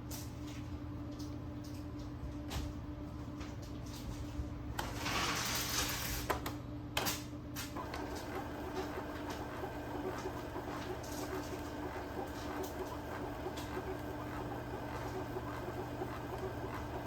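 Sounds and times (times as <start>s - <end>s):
inkjet printer humming: 7.8s - 17.0s.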